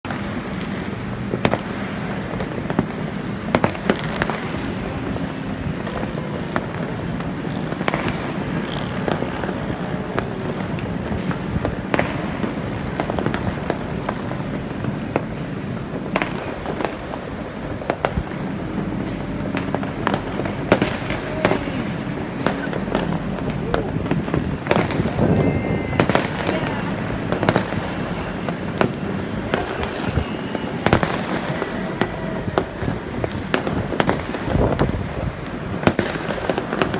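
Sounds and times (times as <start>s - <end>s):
loud firework bangs: 0.1s - 9.8s, 19.6s - 23.3s, 24.0s - 36.9s
fireworks bangs and crackles: 0.1s - 36.9s.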